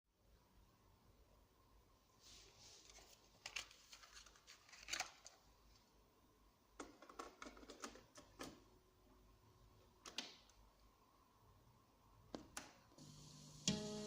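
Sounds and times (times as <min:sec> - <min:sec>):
soft rustle: 0:02.1 - 0:05.9.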